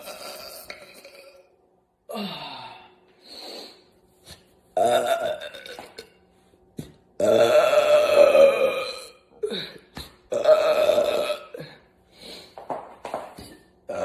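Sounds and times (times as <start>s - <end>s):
woman belching: 0.0s - 1.5s, 4.8s - 6.1s, 7.2s - 9.7s, 10.3s - 11.7s.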